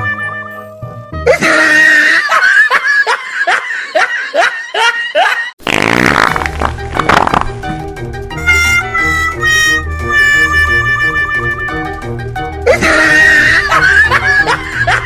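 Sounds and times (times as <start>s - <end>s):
music: 0.0s - 1.9s, 5.7s - 15.0s
laughter: 1.3s - 5.6s, 12.7s - 15.0s
fart sound effects: 5.6s - 7.6s.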